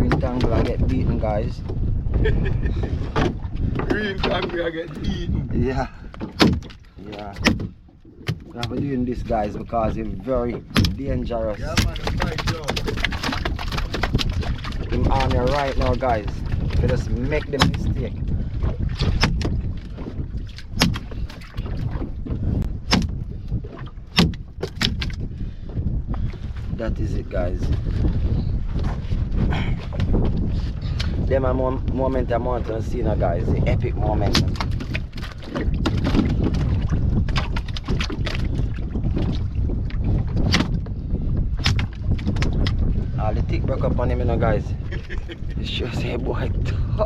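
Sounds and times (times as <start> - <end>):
sharp knocks on boat: 0.0 - 0.8, 2.9 - 5.1, 6.2 - 18.1, 18.7 - 22.2, 22.8 - 25.2, 34.2 - 39.4, 40.4 - 41.0, 41.6 - 42.8
water sloshing and splashing: 0.0 - 47.0
wind rumble on microphone: 0.0 - 47.0.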